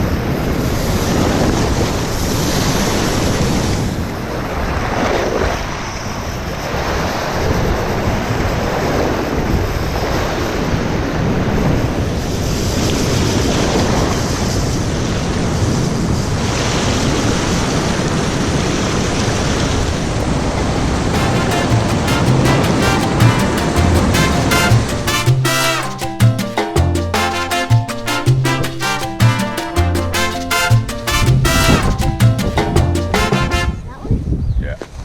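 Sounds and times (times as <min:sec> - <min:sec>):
wind buffeting microphone: 0:00.0 - 0:24.6.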